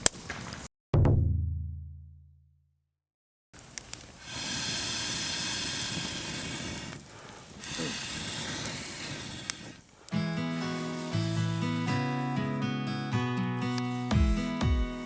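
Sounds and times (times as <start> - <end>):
sharp fire crackles: 3.6 - 12.6, 13.6 - 15.0
wood fire grill sizzling: 3.6 - 15.0.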